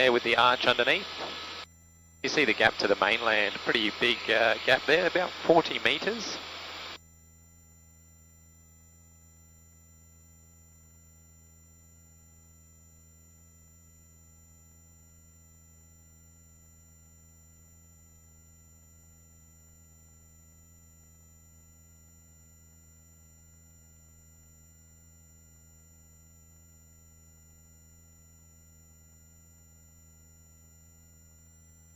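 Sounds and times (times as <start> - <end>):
faint steady intercom hum: 0.0 - 7.0.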